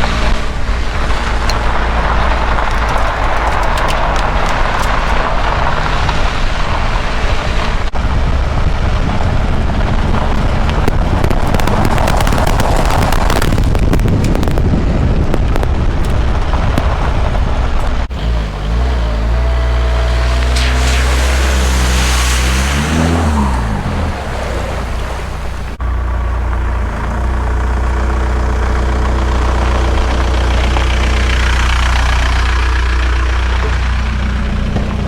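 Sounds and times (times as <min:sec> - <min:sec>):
car engine and road rumble: 0:00.0 - 0:35.0
crackling: 0:00.0 - 0:35.0
tyre noise: 0:00.0 - 0:35.0.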